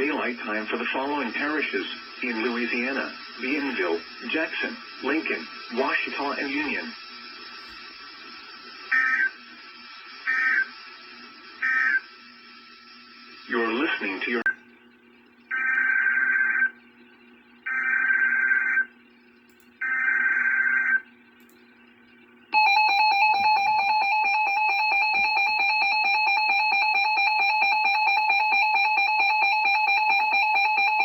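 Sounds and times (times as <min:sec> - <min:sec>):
data tone bursts: 0:00.0 - 0:09.4, 0:22.6 - 0:31.0.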